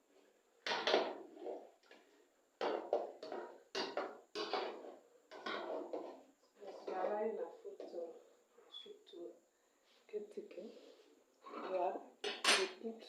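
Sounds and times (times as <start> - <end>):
utensils knocking against pot: 12.2 - 12.8.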